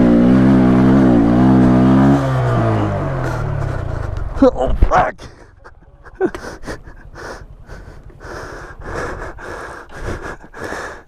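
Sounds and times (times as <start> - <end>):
person breathing hard: 6.2 - 11.0.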